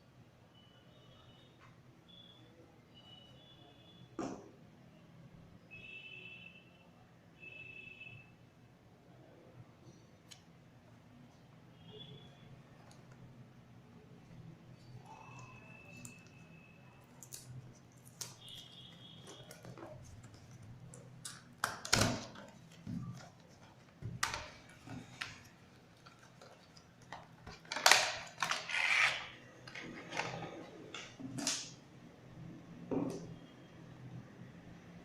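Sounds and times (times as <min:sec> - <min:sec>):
packaging clicks and rustles: 0:17.2 - 0:31.6.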